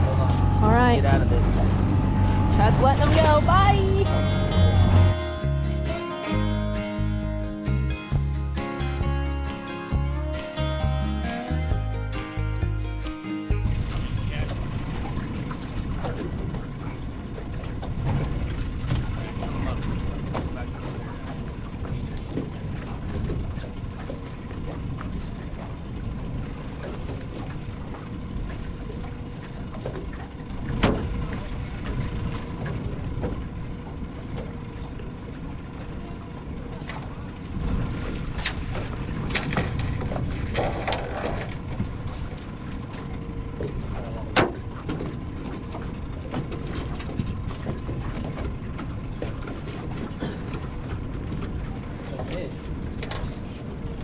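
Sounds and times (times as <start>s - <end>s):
boat motor running: 0.0s - 17.8s
water rumble: 0.0s - 54.0s
wind: 0.0s - 54.0s.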